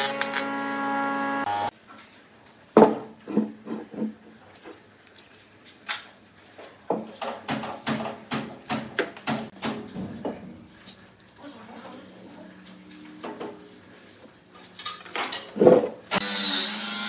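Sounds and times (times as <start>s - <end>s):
power tool motor cutting off: 0.0s - 1.7s, 16.1s - 17.0s.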